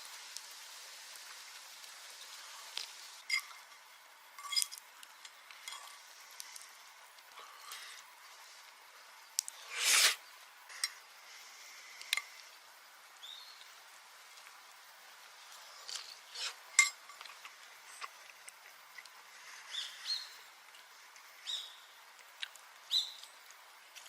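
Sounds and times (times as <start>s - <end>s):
food sizzling in frying pan: 0.0s - 18.8s.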